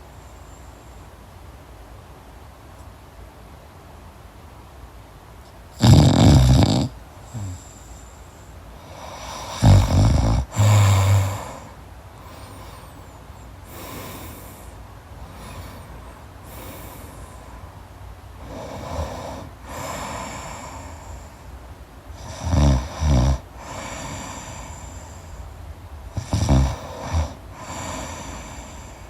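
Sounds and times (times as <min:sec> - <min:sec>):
person snoring: 0:05.8 - 0:08.0, 0:08.9 - 0:12.9, 0:18.4 - 0:21.1, 0:22.2 - 0:25.1, 0:26.2 - 0:29.0.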